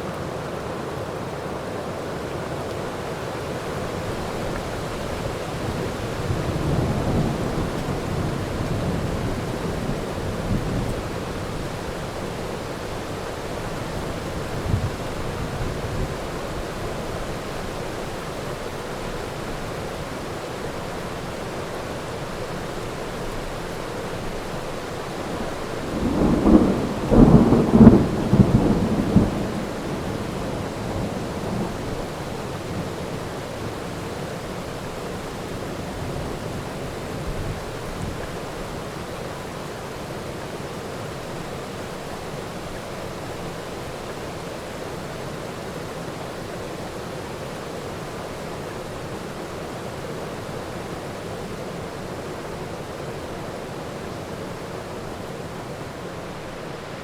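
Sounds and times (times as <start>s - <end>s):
steady rain: 0.0s - 57.0s
thunder rumbling: 25.3s - 32.9s.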